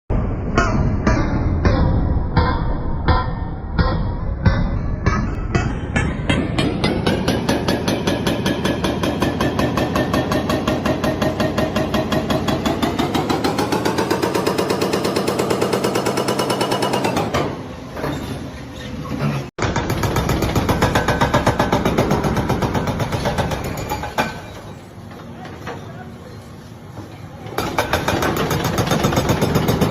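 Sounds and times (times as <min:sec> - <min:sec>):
rapid even hammering: 0:05.6 - 0:17.5
backhoe engine running: 0:07.2 - 0:17.5, 0:27.4 - 0:29.9.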